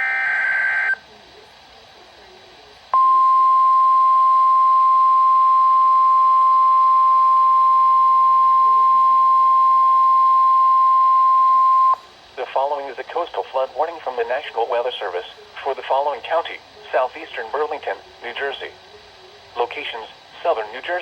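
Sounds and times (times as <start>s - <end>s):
faint radio hiss: 0.0s - 10.2s, 11.0s - 21.0s
loud high alarm beep: 3.0s - 12.0s.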